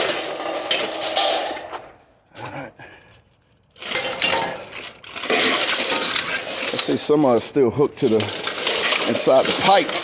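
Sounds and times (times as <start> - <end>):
scrap metal clattering: 0.0 - 2.0, 3.8 - 7.4, 8.0 - 10.0.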